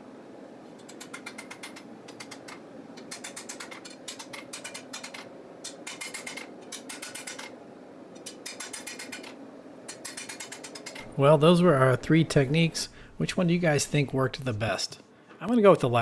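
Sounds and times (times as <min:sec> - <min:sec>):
ratchet-like mechanical clicking: 0:00.9 - 0:07.5, 0:08.2 - 0:11.0.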